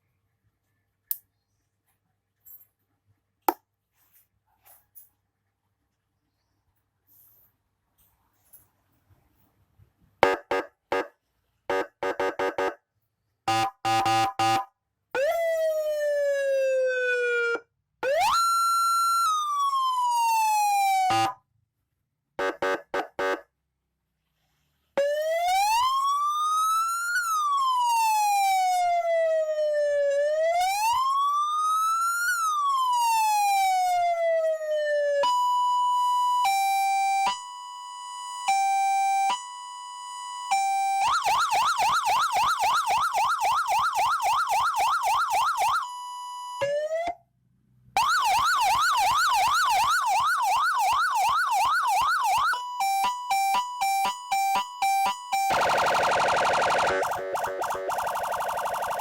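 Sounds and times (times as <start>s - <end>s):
police siren through horn speaker: 10.2s - 11.1s, 11.7s - 12.8s, 13.5s - 21.4s, 22.4s - 23.4s, 32.0s - 46.7s, 48.0s - 59.0s.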